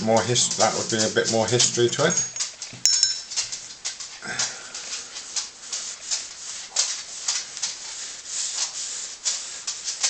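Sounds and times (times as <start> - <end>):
hand rubbing on lamp: 0.0 - 2.4, 4.8 - 10.0.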